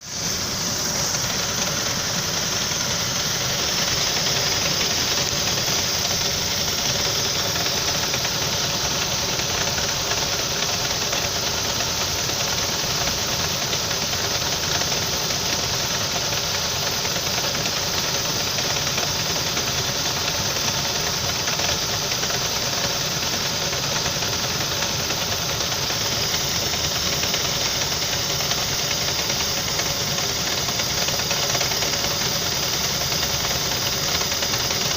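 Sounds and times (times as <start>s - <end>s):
car engine idling with knock: 0.0s - 34.9s.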